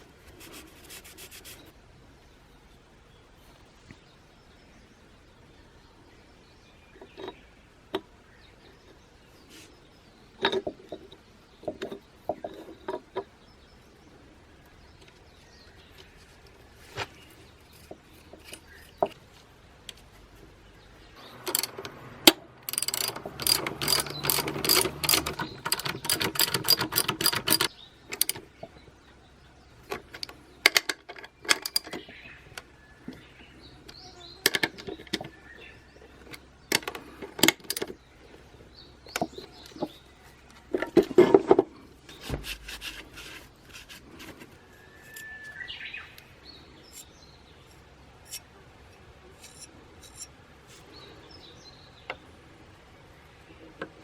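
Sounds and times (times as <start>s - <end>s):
metal tools clinking and knocking: 10.4s - 13.2s, 21.2s - 28.5s, 29.9s - 32.2s, 49.4s - 50.3s
ratchet clicking: 21.2s - 28.4s.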